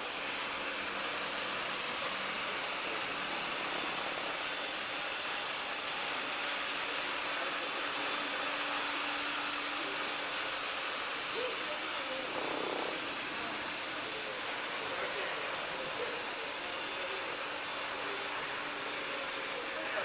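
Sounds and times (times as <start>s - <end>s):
floor scrubber motor whoosh: 12.1s - 13.6s.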